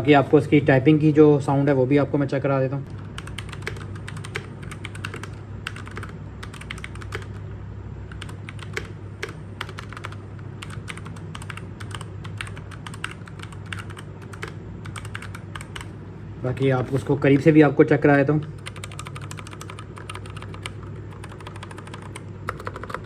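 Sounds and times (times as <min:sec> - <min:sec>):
steady low hum: 0:00.0 - 0:23.0
mechanical keyboard typing: 0:02.9 - 0:07.5, 0:08.1 - 0:15.9, 0:18.4 - 0:23.0.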